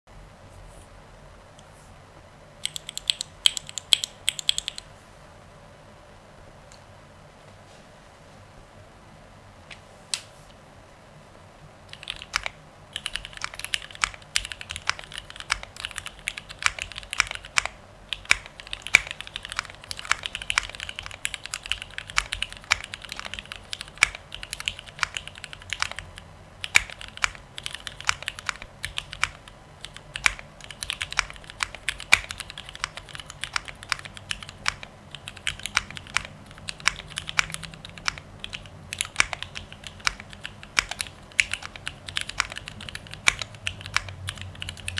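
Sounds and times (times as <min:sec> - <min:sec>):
fast typing on mechanical keyboard: 0:02.6 - 0:04.8, 0:11.9 - 0:44.9.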